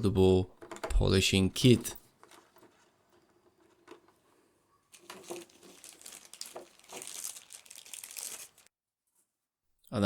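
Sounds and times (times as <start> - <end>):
packaging crinkling and rustling: 2.1 - 8.7.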